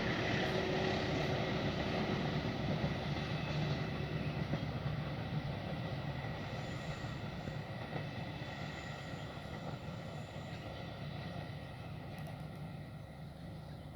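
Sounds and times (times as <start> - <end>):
passenger train rumbling past: 0.0 - 13.9.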